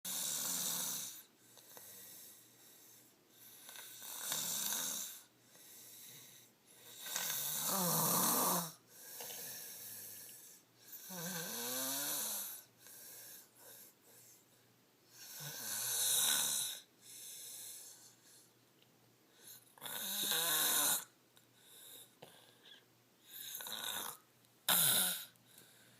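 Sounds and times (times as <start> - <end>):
girl snoring: 0.1 - 1.3, 3.5 - 5.3, 6.9 - 10.0, 10.9 - 12.7, 15.2 - 16.9, 19.8 - 21.1, 23.3 - 25.4
quiet breaths: 0.1 - 25.9.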